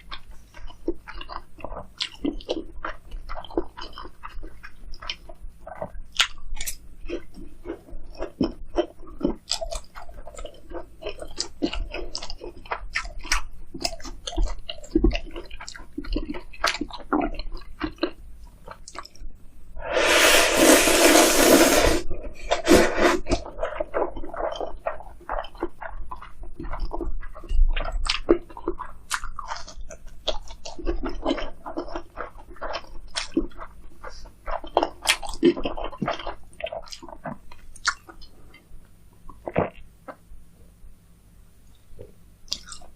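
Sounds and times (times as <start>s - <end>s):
chewing crispy food: 0.0s - 19.3s, 21.7s - 40.8s, 41.7s - 42.9s
wet mouth sounds: 0.0s - 40.3s, 42.0s - 42.9s
noodles slurped: 19.9s - 29.7s.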